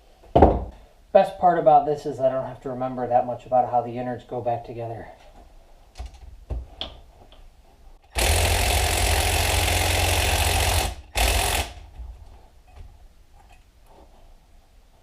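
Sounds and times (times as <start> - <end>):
impact wrench bursts: 8.0 - 11.9.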